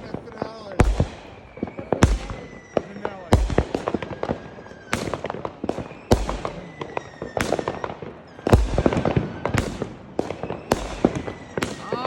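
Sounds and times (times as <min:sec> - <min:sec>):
fireworks booming: 0:00.0 - 0:12.0
fireworks crackling pops: 0:00.0 - 0:12.0.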